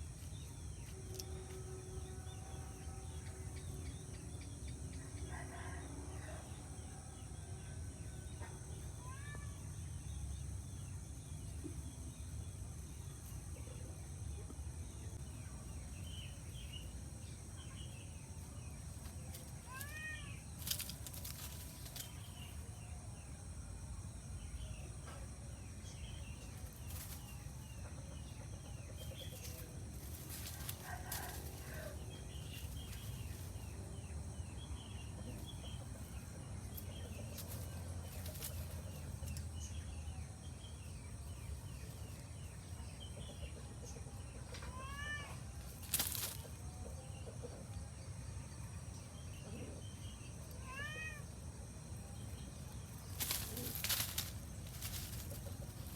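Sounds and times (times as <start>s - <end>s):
cat meowing: 19.7s - 20.4s, 44.7s - 45.4s, 50.6s - 51.2s
birds chirping: 24.4s - 55.9s.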